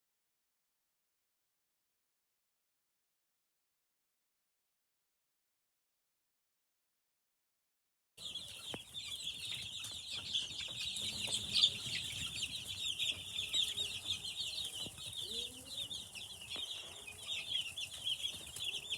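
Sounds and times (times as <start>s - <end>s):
chicks peeping: 8.2s - 18.9s.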